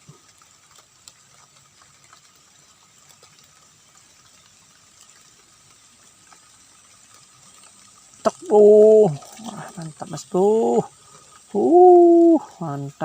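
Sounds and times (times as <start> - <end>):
light rain hissing: 0.0 - 13.0
thin high steady tone: 6.8 - 13.0.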